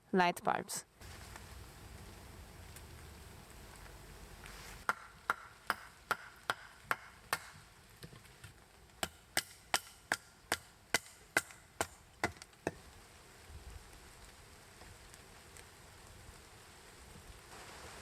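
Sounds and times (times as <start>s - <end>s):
wood being chopped: 4.8s - 12.8s.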